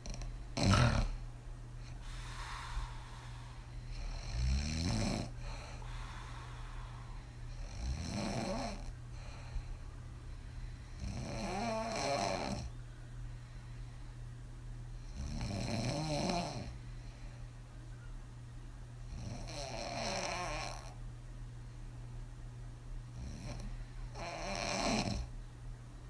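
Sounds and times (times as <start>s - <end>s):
woman snoring: 0.0s - 1.2s, 2.0s - 8.9s, 11.0s - 12.7s, 15.0s - 16.8s, 19.1s - 21.0s, 23.2s - 25.3s
airy breath: 1.9s - 4.2s, 5.3s - 7.5s, 9.1s - 11.0s.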